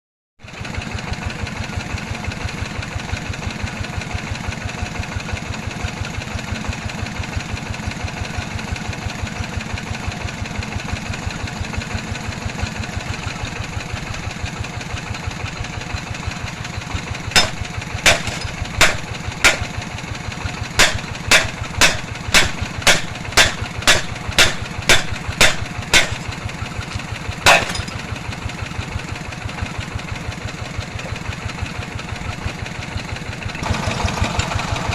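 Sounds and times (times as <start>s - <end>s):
drilling machine engine running: 0.5s - 34.9s
sharp knocks: 17.4s - 19.8s, 20.8s - 26.3s.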